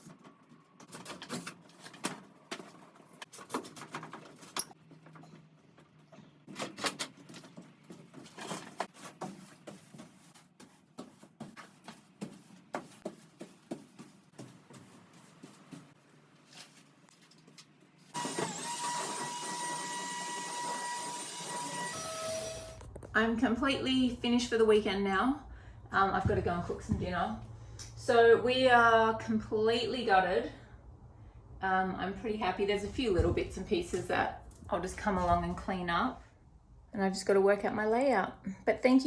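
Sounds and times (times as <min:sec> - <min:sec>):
steady high tone: 0:18.2 - 0:22.8.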